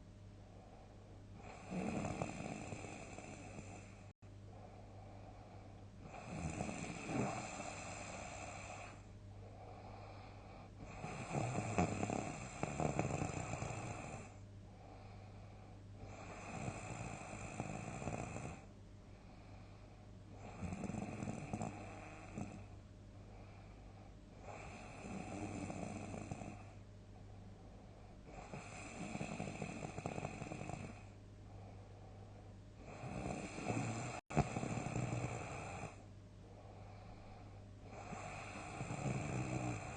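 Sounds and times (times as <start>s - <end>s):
person snoring: 1.4s - 4.0s, 6.0s - 9.0s, 9.7s - 14.4s, 16.0s - 18.7s, 20.4s - 22.7s, 24.4s - 26.8s, 28.3s - 31.1s, 32.8s - 36.0s, 37.8s - 39.9s.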